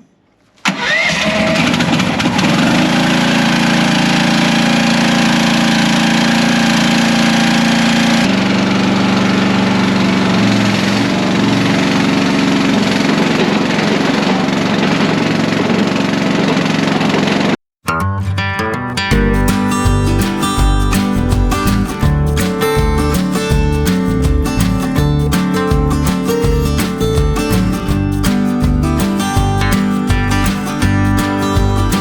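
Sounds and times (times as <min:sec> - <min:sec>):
small engine running: 0:00.8 - 0:17.6.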